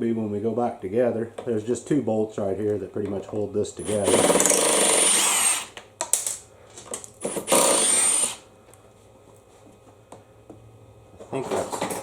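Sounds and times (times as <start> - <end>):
power drill whining: 3.8 - 5.8, 7.2 - 8.4.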